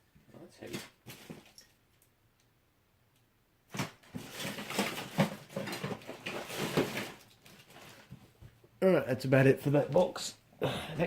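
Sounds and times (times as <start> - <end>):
rustling and clattering of parts: 0.2 - 2.1, 3.7 - 8.6.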